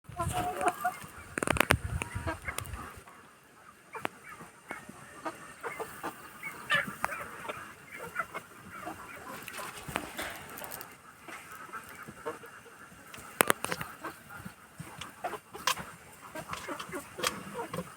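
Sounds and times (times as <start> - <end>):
chickens clucking: 0.1 - 17.9
knocks and rustling: 9.2 - 12.2, 13.1 - 17.9.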